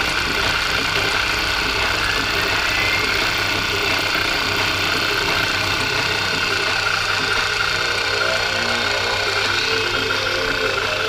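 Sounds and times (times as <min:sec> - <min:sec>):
milling machine cutting: 0:00.0 - 0:11.0.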